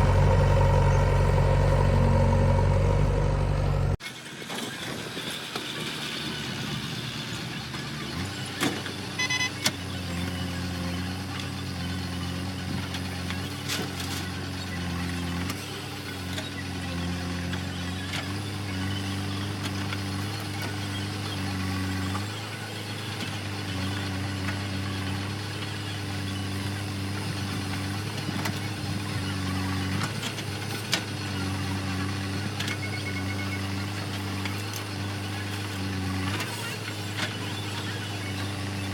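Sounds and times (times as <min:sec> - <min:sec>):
heavy diesel engine running: 0:00.0 - 0:04.0.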